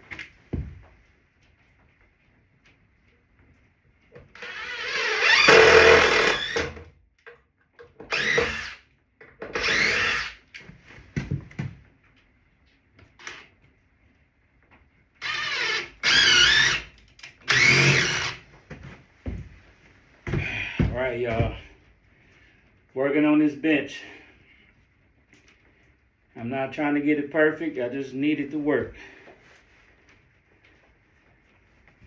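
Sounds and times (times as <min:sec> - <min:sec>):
power drill whirring: 0:04.3 - 0:06.9, 0:08.0 - 0:08.8, 0:09.5 - 0:10.4, 0:15.2 - 0:18.4.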